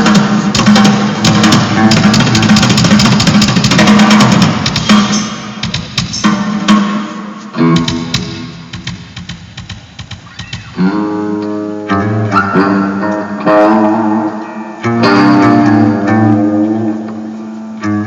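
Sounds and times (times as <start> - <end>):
drum hits: 0.0 - 11.0
rock band playing: 0.0 - 18.0.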